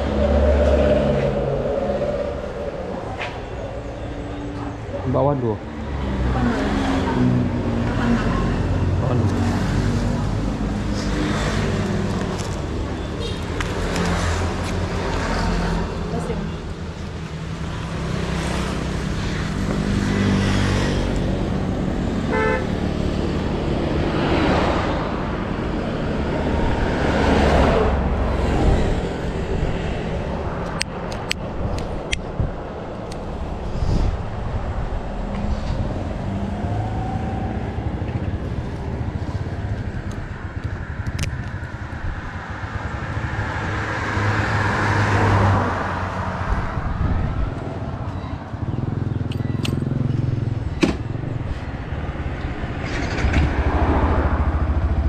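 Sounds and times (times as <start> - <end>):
traffic: 0.0 - 55.0
wind and road noise: 0.0 - 55.0
horn toot: 22.3 - 22.8.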